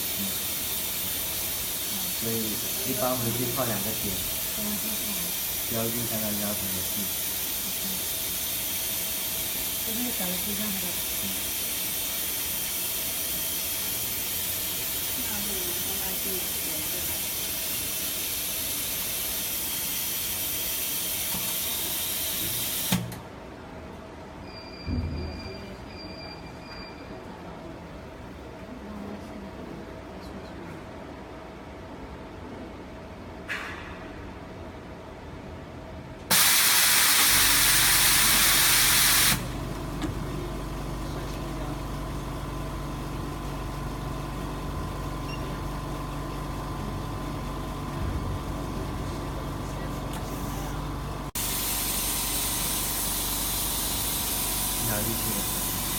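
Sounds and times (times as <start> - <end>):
machine air hiss: 0.0 - 23.2, 36.3 - 39.6, 50.3 - 55.9.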